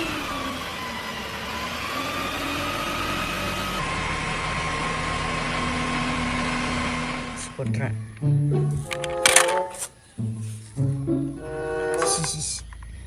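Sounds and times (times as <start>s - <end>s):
motor whining: 0.0s - 7.5s.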